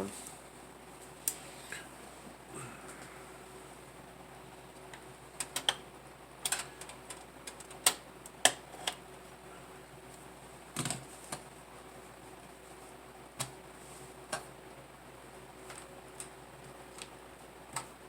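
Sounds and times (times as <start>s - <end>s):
computer peripherals clicking: 4.8s - 9.0s.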